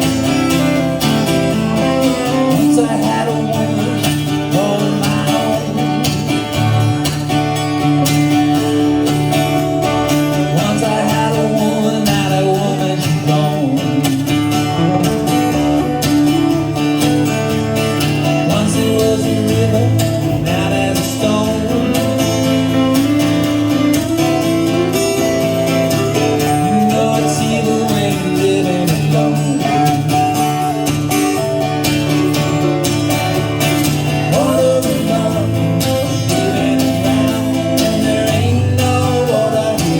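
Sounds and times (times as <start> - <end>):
live band with guitars: 0.0 - 39.9
person singing: 2.2 - 6.8, 9.8 - 15.1, 18.3 - 22.7, 26.0 - 30.6, 34.2 - 39.9.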